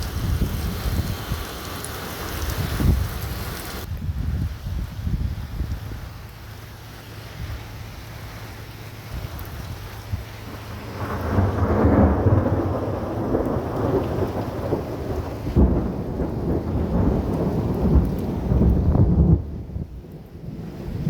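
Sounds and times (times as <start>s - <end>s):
thunder rumbling: 0.0s - 1.6s, 9.1s - 21.0s
steady rain: 0.0s - 21.0s.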